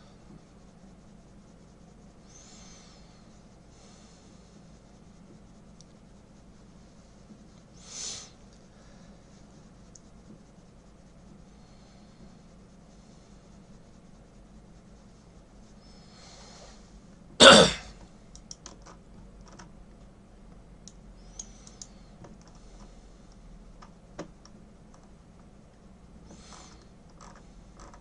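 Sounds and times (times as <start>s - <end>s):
man coughing: 17.4s - 17.9s
keyboard and mouse clicks: 18.3s - 19.8s, 20.8s - 22.6s.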